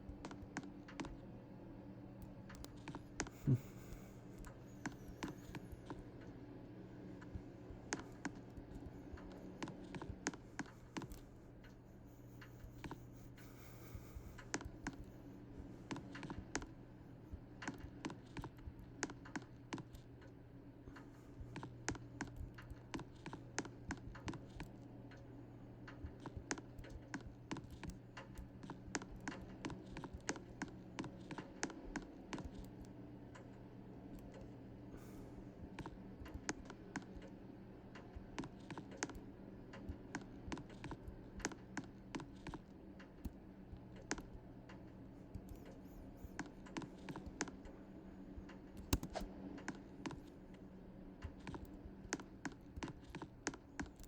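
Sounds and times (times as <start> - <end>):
steady low hum: 0.0 - 54.0
typing on computer keyboard: 25.8 - 32.9.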